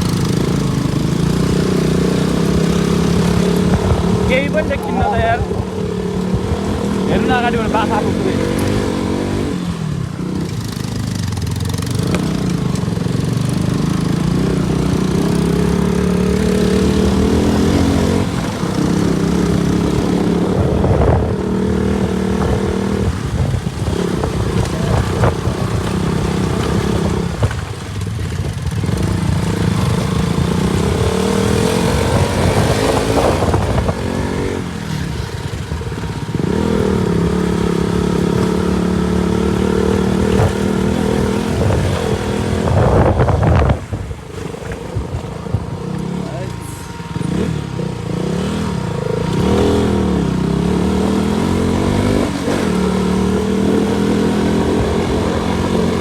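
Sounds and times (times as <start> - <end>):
motorcycle engine revving: 0.0 - 56.0
wind and road noise: 0.0 - 56.0.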